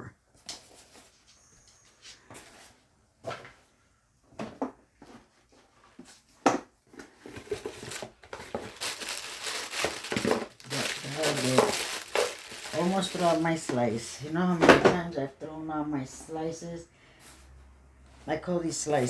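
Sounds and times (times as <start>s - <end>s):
packaging crinkling: 7.3s - 14.2s.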